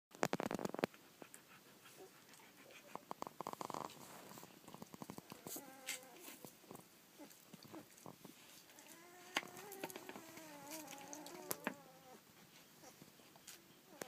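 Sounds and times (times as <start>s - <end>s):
puppy whimper: 5.3s - 6.5s, 8.7s - 12.2s, 12.8s - 13.1s
puppy grunts: 7.2s - 12.2s.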